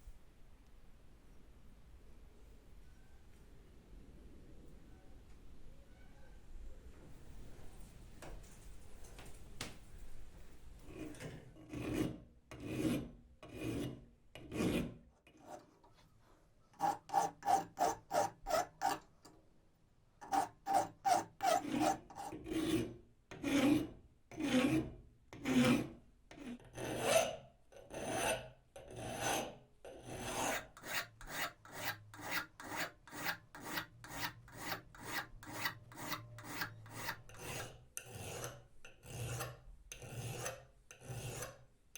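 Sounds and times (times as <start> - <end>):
hand file scraping metal: 10.8 - 16.0, 16.8 - 19.1, 20.2 - 41.6.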